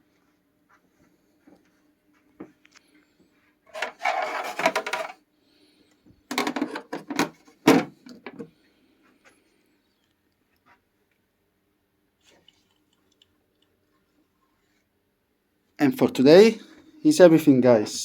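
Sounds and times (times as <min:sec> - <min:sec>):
scraping rub: 0:03.7 - 0:05.2
hard parts knocking together: 0:03.8 - 0:05.2, 0:06.3 - 0:08.5.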